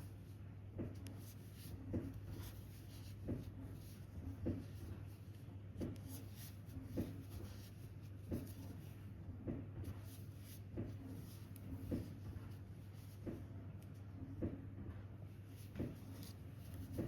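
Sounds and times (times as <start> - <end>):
crochet hook rubbing yarn: 0.8 - 9.0, 9.9 - 13.4, 15.5 - 17.0.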